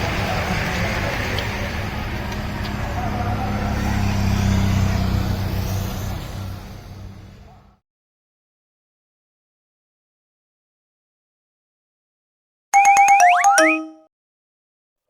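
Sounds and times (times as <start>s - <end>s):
motor vehicle droning: 0.0s - 7.8s.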